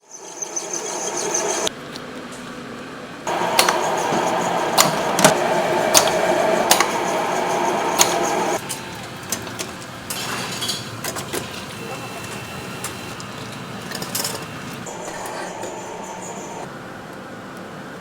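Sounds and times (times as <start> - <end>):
machinery humming: 3.3 - 17.0.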